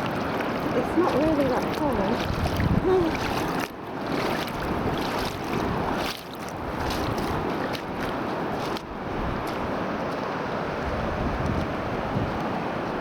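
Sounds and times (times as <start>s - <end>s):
small splashes from steps: 0.0s - 9.6s
wind buffeting microphone: 0.0s - 10.0s, 10.6s - 13.0s
water sloshing around feet: 0.0s - 13.0s.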